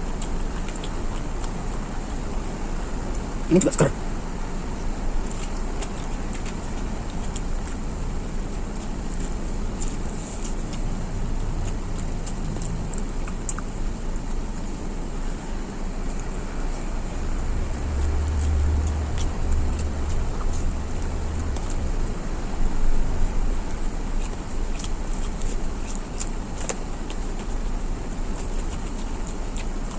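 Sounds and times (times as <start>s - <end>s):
small crunchy clicks: 0.0s - 3.9s, 4.8s - 16.9s, 17.6s - 29.9s
close-up chewing: 0.0s - 29.9s
low rumble: 16.0s - 24.8s.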